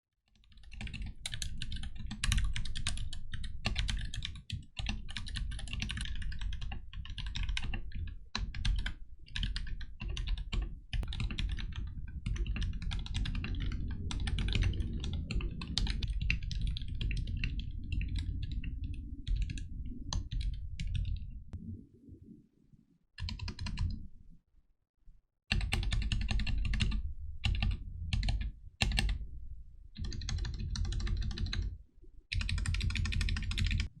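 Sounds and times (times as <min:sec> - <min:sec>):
mechanical keyboard typing: 0:00.4 - 0:18.5, 0:23.2 - 0:24.0, 0:25.5 - 0:29.2, 0:30.0 - 0:31.7, 0:32.3 - 0:33.9.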